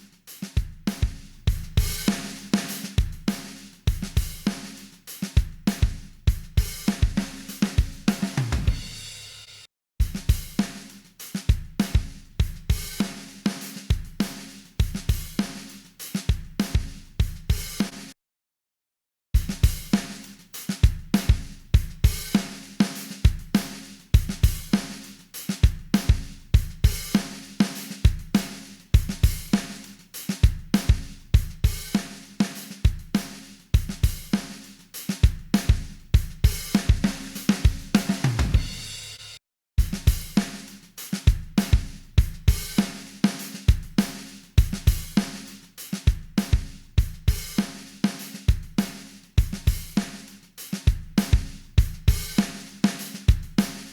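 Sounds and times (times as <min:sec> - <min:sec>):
drum kit groove: 0:00.0 - 0:18.1, 0:19.4 - 0:53.9.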